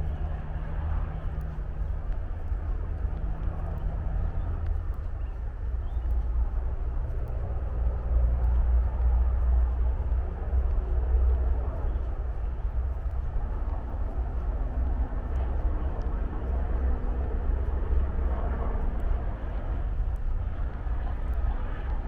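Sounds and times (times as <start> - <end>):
distant traffic rumble: 0.0 - 22.0.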